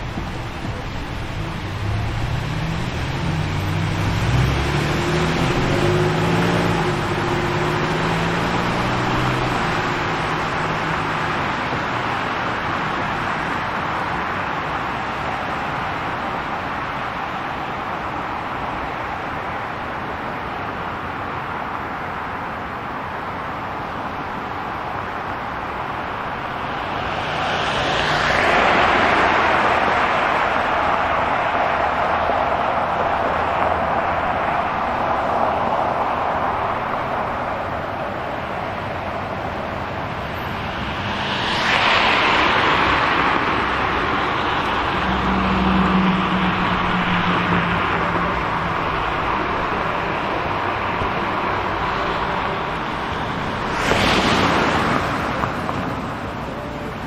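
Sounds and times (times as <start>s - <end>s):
vehicle engine rising and falling: 0.0s - 11.6s
vehicle passing close by: 0.0s - 13.9s, 26.1s - 56.6s
road traffic hiss: 0.0s - 57.0s.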